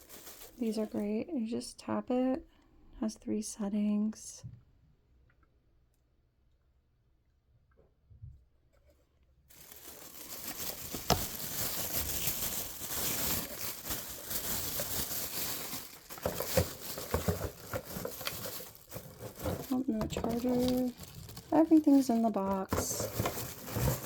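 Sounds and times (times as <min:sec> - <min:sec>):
packaging crinkling and rustling: 0:00.0 - 0:01.1, 0:09.5 - 0:24.0.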